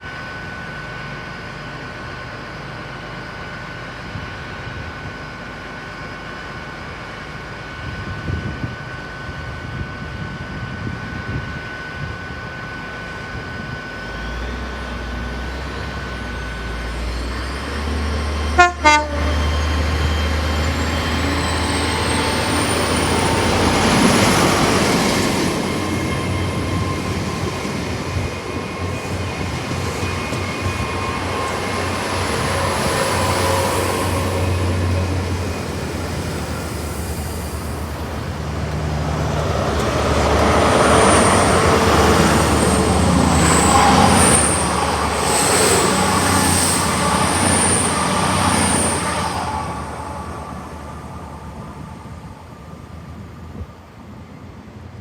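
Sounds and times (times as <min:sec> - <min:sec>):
diesel train engine drone: 0:00.0 - 0:55.0
train horn: 0:18.4 - 0:20.3.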